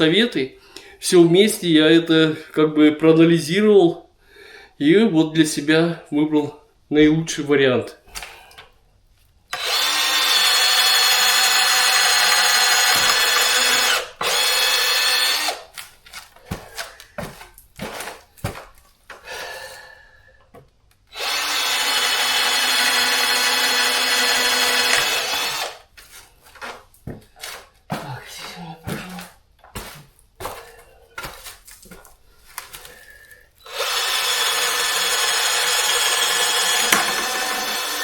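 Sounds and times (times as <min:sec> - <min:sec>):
power drill running: 0:09.5 - 0:15.7, 0:21.1 - 0:25.8, 0:33.6 - 0:38.0.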